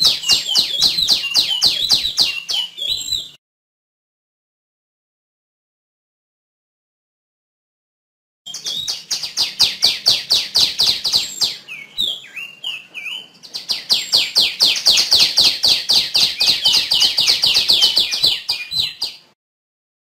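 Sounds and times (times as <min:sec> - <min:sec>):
songbird chirping: 0:00.0 - 0:03.4, 0:08.5 - 0:19.4.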